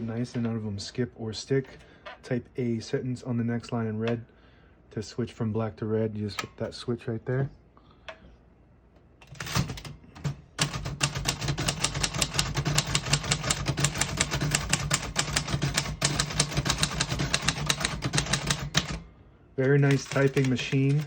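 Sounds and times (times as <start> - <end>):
typewriter keystrokes: 9.3 - 19.0, 19.6 - 21.0.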